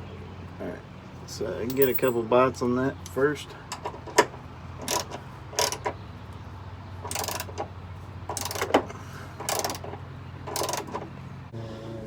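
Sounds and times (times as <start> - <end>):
steady low hum: 4.7 - 12.0.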